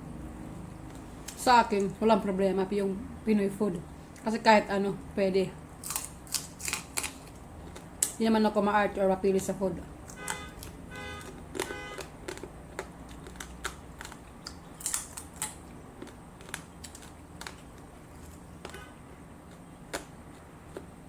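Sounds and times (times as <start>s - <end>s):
steady low hum: 0.0s - 21.0s
person chewing: 5.8s - 8.2s, 10.0s - 21.0s.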